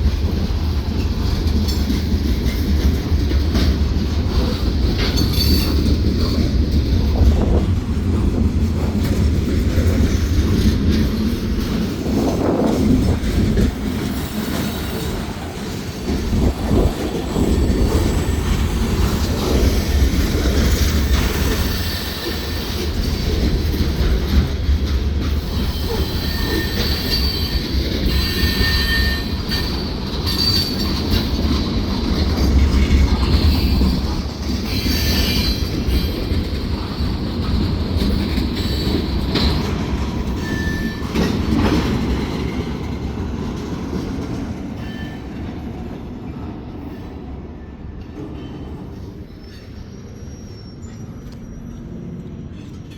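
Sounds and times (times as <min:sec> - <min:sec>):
freight train rolling on rails: 0:00.0 - 0:52.9
train wheels squealing: 0:03.6 - 0:07.6, 0:13.8 - 0:15.4, 0:16.8 - 0:42.9, 0:44.7 - 0:52.9.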